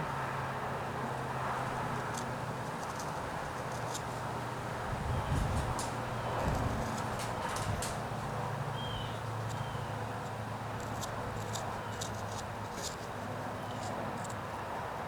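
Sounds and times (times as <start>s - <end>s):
knife scraping wood: 2.0s - 4.1s, 9.5s - 14.4s.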